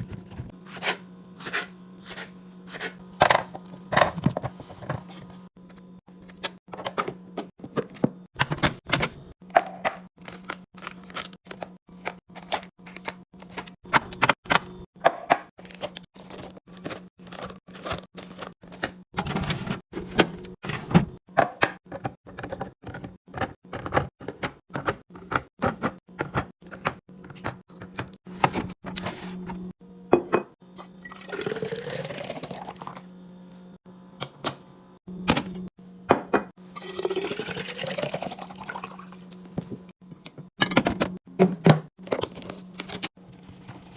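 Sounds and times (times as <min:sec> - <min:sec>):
liquid pouring into container: 0:31.1 - 0:33.0, 0:36.8 - 0:39.2.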